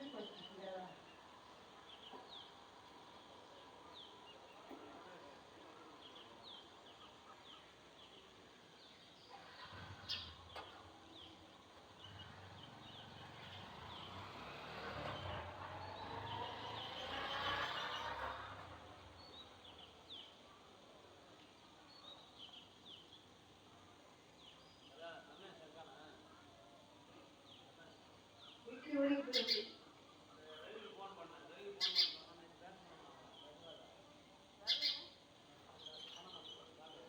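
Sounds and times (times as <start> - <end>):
sparrows chirping: 0.0 - 2.6, 6.0 - 14.2, 19.1 - 20.4, 21.4 - 23.4, 28.4 - 30.2, 31.8 - 32.4, 34.6 - 37.0.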